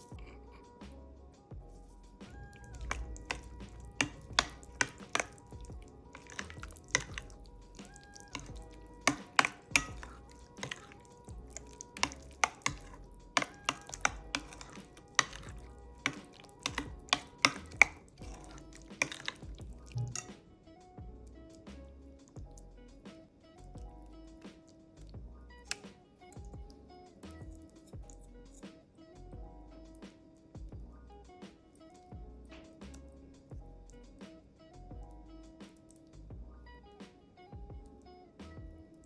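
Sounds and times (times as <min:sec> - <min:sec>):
quiet background music: 0:00.0 - 0:39.0
utensils clicking against dishes: 0:02.3 - 0:20.3.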